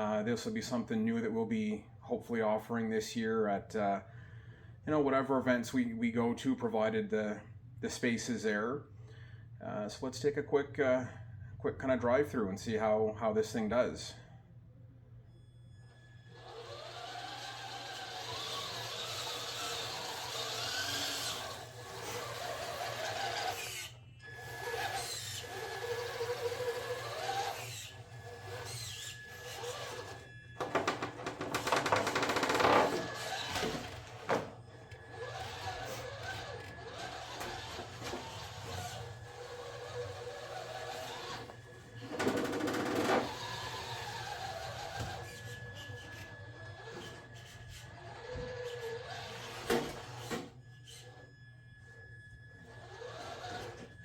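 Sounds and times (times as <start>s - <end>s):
electric motor whining: 15.8s - 54.0s.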